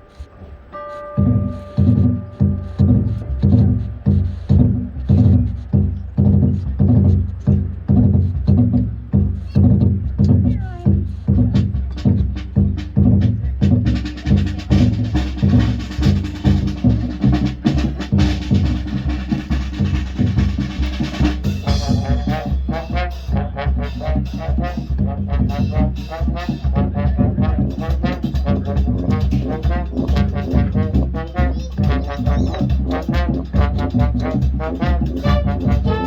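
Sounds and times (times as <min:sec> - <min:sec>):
brass melody: 0:00.0 - 0:06.3, 0:11.5 - 0:36.0
low held notes: 0:00.0 - 0:12.4
marching band drums: 0:00.0 - 0:36.0.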